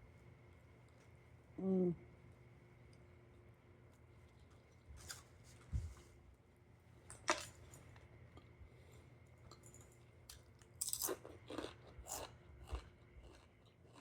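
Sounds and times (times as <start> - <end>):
crunchy snack chewing: 10.3 - 14.0.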